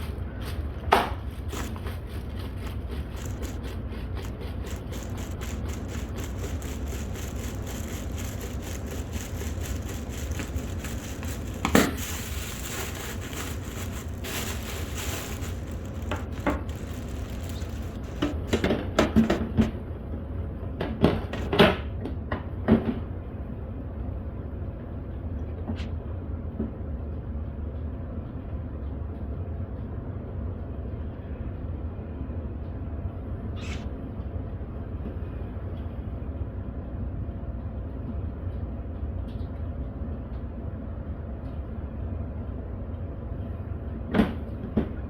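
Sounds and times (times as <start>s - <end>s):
handling crackles and scrapes: 0.0s - 19.7s
steady low hum: 0.0s - 19.7s.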